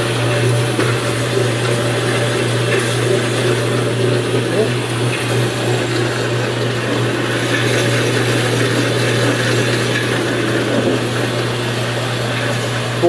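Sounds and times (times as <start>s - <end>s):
bandsaw motor humming: 0.0s - 13.0s.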